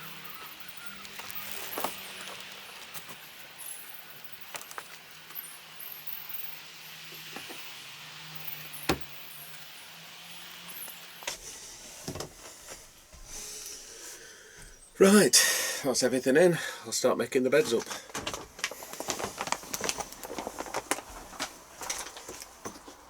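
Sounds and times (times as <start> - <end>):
belongings clicking and rattling: 17.6 - 22.4.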